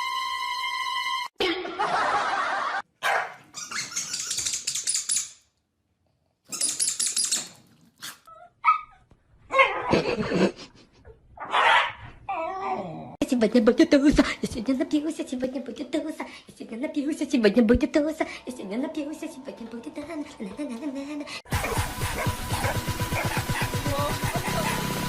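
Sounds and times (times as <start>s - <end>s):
people laughing: 1.4s - 2.8s, 9.9s - 11.0s
dogs barking: 3.0s - 3.5s, 11.4s - 12.0s, 21.5s - 25.0s.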